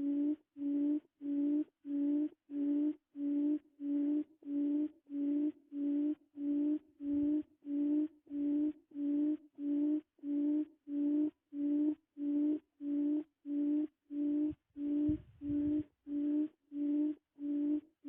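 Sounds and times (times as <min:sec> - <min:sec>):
low pulsing tone: 0:00.0 - 0:18.0.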